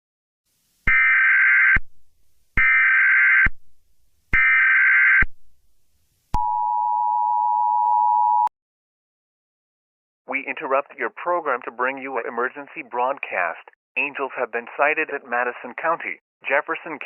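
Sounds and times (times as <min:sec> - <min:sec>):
two-tone attention beep: 0:06.4 - 0:08.5.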